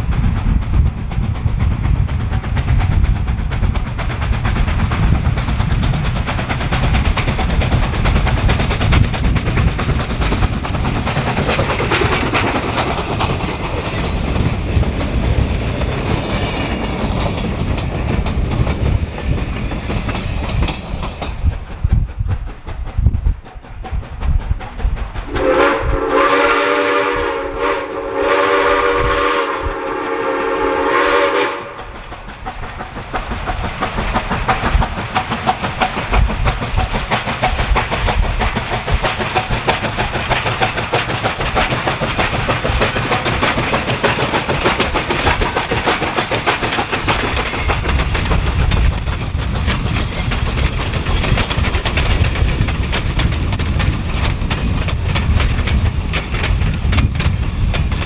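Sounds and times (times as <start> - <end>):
train low rumble: 0.0 - 58.0
train wheels clattering on rail: 0.0 - 58.0
train whistle: 25.3 - 31.8.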